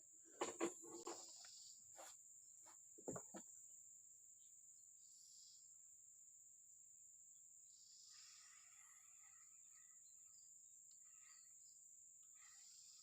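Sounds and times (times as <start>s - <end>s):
soft knocks: 3.0s - 3.4s
high-pitched insect chorus: 3.1s - 13.0s.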